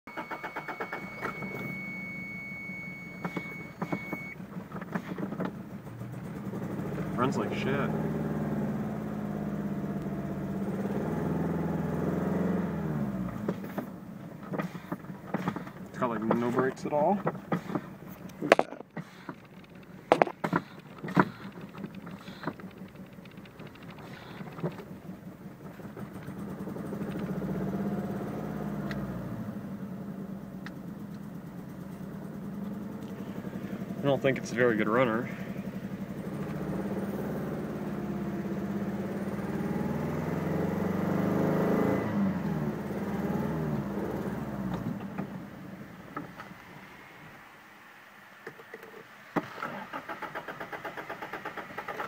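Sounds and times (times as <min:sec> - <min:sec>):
engine misfire pops: 0:03.2 - 0:05.6, 0:13.3 - 0:25.0
car engine idling roughly: 0:03.2 - 0:07.8, 0:14.0 - 0:27.1, 0:30.8 - 0:36.6.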